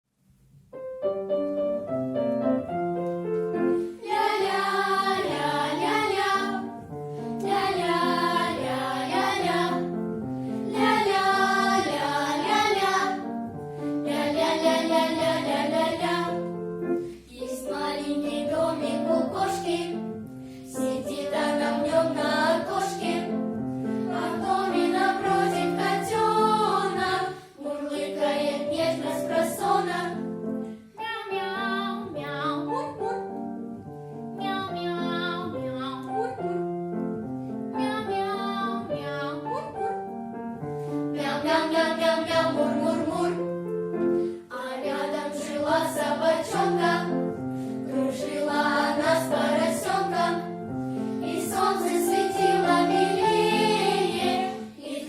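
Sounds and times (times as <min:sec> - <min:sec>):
children singing: 0:04.0 - 0:06.8, 0:07.4 - 0:10.0, 0:10.7 - 0:13.3, 0:14.0 - 0:16.5, 0:17.3 - 0:20.0, 0:20.8 - 0:23.3, 0:24.0 - 0:30.2, 0:41.2 - 0:43.5, 0:44.5 - 0:47.3, 0:47.9 - 0:50.6, 0:51.2 - 0:55.0.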